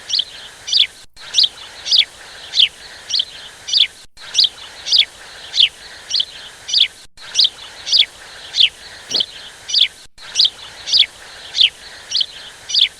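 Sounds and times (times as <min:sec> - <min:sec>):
bird chirping: 0:00.0 - 0:12.9.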